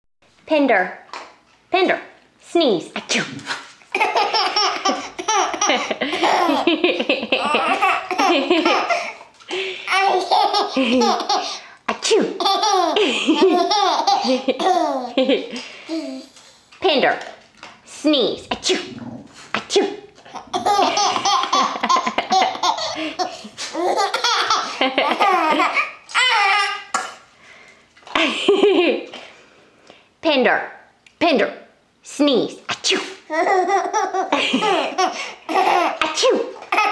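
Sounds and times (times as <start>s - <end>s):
baby laughing: 3.9s - 16.3s, 20.3s - 27.0s, 33.3s - 36.9s.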